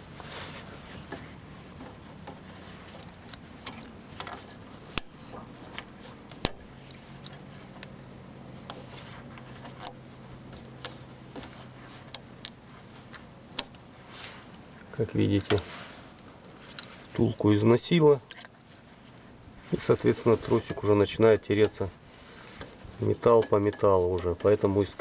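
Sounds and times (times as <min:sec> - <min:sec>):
faint steady hum: 0:00.0 - 0:25.0
small clicks of metal and plastic parts: 0:01.8 - 0:08.0, 0:08.6 - 0:13.8, 0:14.6 - 0:17.0, 0:18.2 - 0:18.7, 0:20.6 - 0:21.9, 0:22.6 - 0:25.0.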